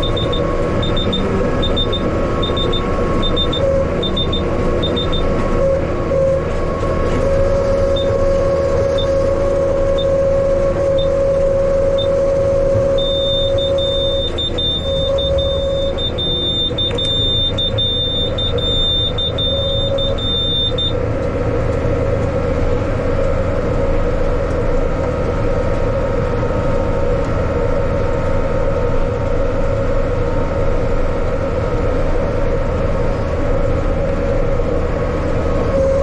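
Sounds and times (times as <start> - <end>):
high electronic beep tone: 0.0 - 5.3, 7.8 - 9.2, 12.9 - 21.0
tractor diesel engine running: 0.0 - 36.0.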